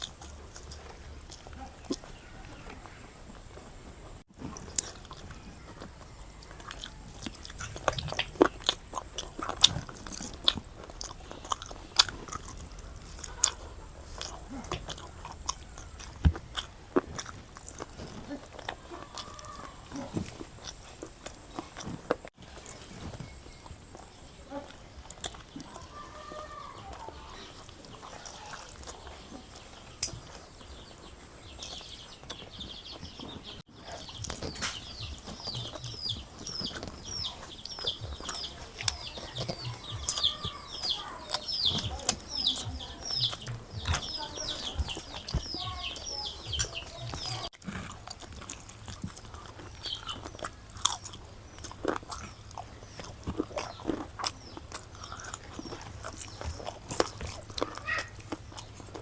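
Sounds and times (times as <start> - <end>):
food crunching: 0.0 - 59.0
person chewing food: 0.0 - 59.0
mouth clicks: 33.7 - 59.0.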